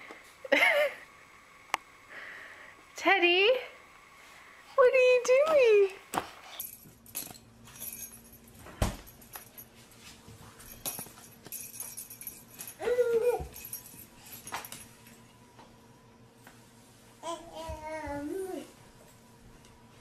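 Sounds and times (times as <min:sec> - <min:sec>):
light jingling: 0:06.5 - 0:09.8, 0:10.6 - 0:15.2.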